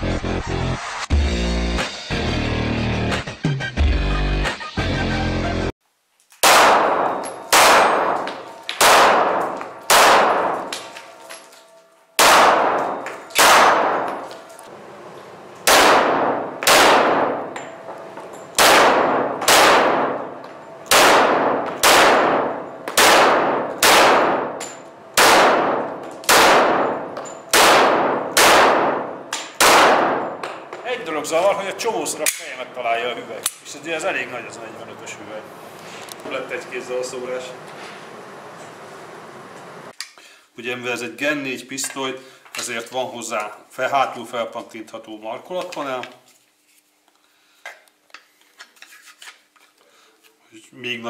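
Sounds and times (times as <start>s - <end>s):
pistol shots echoing: 6.4s - 11.2s, 12.2s - 14.4s, 15.6s - 30.8s.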